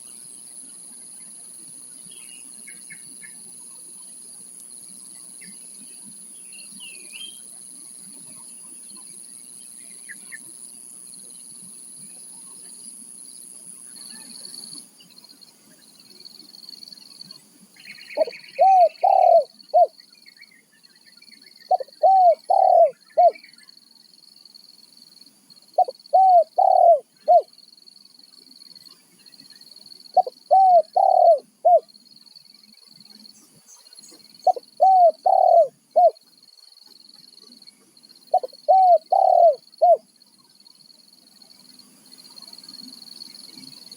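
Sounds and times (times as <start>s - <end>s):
insects buzzing: 0.0s - 43.9s
dove cooing: 18.2s - 19.9s, 21.7s - 23.4s, 25.8s - 27.5s, 30.2s - 31.9s, 34.4s - 36.2s, 38.3s - 40.1s.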